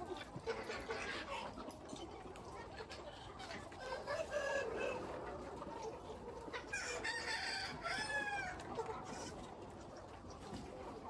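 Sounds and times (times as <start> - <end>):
chickens clucking: 0.0 - 11.0.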